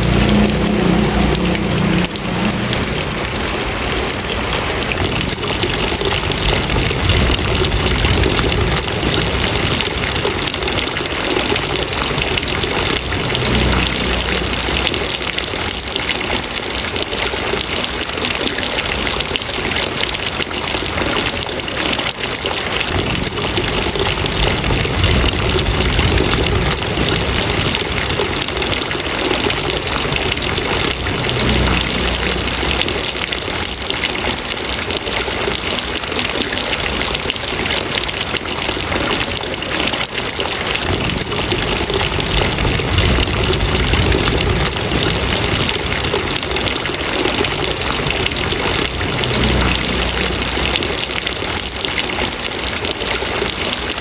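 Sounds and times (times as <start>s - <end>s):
rain pouring: 0.0s - 54.0s
low rumble: 40.8s - 51.8s.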